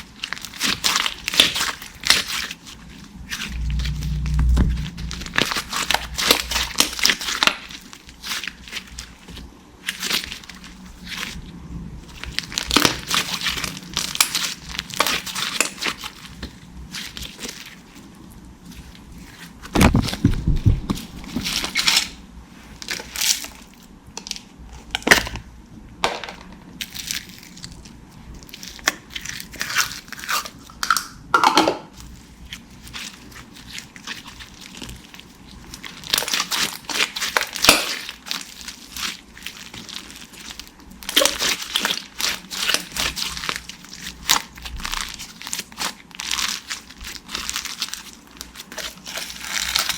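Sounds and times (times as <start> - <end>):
slime squished by hand: 0.0 - 11.4, 12.0 - 22.1, 31.9 - 49.9.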